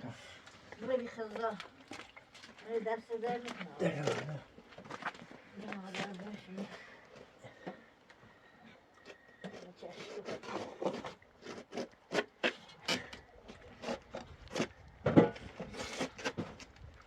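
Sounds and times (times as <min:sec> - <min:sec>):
knocking and scraping: 0:09.6 - 0:16.7.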